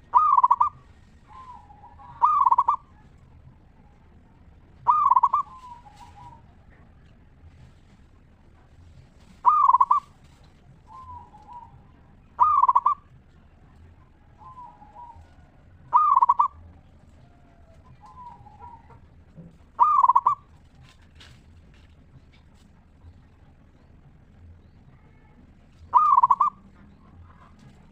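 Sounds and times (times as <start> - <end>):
soft warbling bird notes: 0.0 - 3.0, 4.8 - 6.8, 9.4 - 10.2, 10.9 - 13.2, 14.3 - 16.8, 19.8 - 20.5, 25.8 - 27.5
dove cooing: 0.0 - 27.9.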